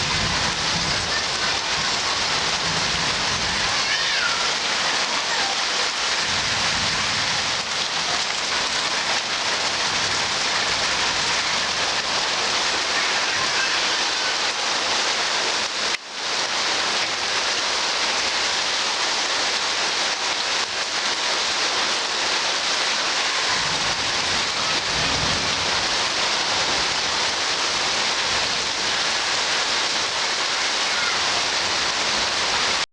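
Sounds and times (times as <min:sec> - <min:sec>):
heavy rain hissing: 0:00.0 - 0:32.9.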